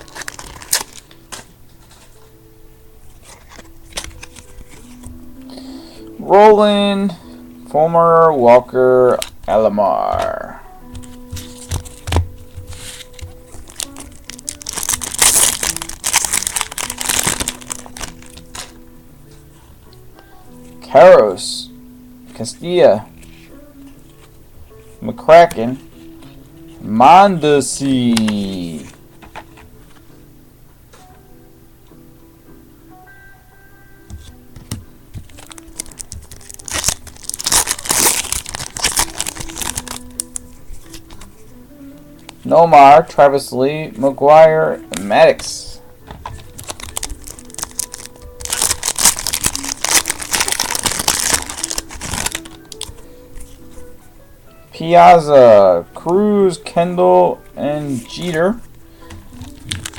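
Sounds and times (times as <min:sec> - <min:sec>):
foil wrapper crinkling and tearing: 0:00.0 - 0:01.4, 0:11.0 - 0:18.8, 0:35.2 - 0:41.3, 0:46.3 - 0:53.6, 0:59.3 - 0:59.9.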